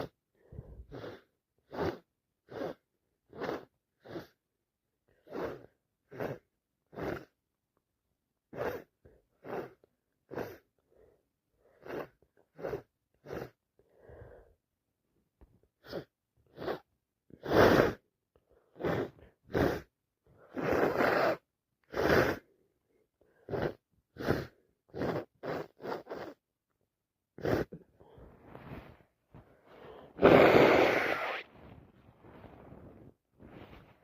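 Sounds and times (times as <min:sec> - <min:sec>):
person sniffing: 0:00.0 - 0:04.4, 0:05.2 - 0:07.3, 0:08.6 - 0:14.4, 0:15.8 - 0:18.0, 0:18.7 - 0:22.5, 0:23.3 - 0:26.4, 0:27.4 - 0:34.0
person sneezing: 0:30.1 - 0:31.4.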